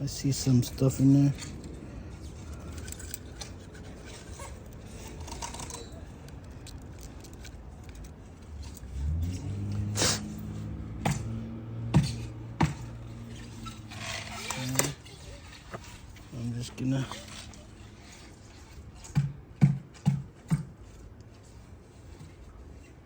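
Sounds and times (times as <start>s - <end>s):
metal wires scraping and jangling: 0.0s - 19.5s, 20.3s - 23.0s
sharp knocks: 11.0s - 13.0s, 19.0s - 20.8s.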